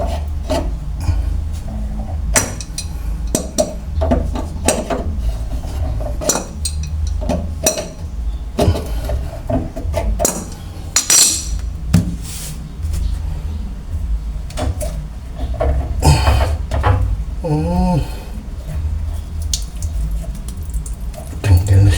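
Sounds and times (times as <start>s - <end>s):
metal clatter: 9.9s - 11.6s
metallic clinks and knocks of tools: 11.0s - 11.6s.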